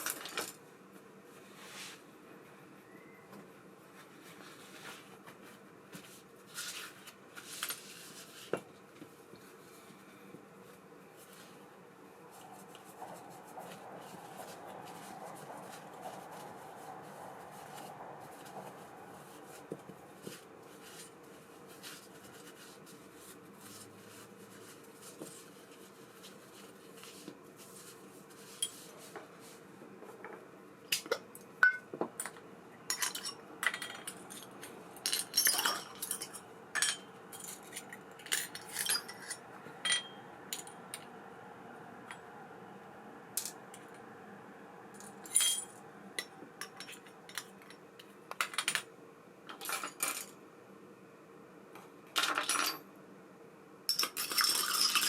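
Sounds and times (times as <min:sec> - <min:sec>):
faint steady hum: 0:00.0 - 0:55.0
small metal parts clinking: 0:32.9 - 0:40.7.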